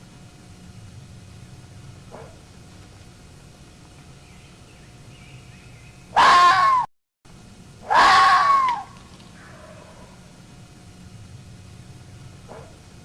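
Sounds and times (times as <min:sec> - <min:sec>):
fox crying calls: 0:06.1 - 0:06.9, 0:07.8 - 0:10.2.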